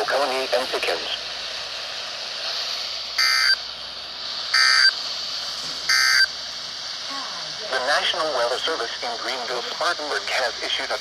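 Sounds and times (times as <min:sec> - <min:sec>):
radio hiss: 0:00.0 - 0:11.0
digital data tone bursts: 0:03.2 - 0:03.6, 0:04.5 - 0:05.0, 0:05.9 - 0:06.3.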